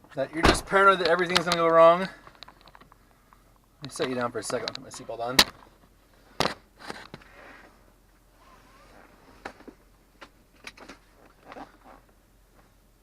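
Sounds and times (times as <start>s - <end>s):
seatbelt rustling: 8.4s - 9.8s, 10.7s - 12.2s.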